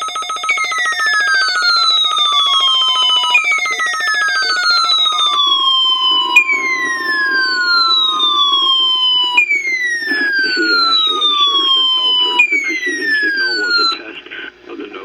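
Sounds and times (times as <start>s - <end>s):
electronic alarm tone sliding down: 0.0s - 14.0s
steady high tone: 0.0s - 14.0s
rapid pulsing buzz: 2.0s - 13.9s.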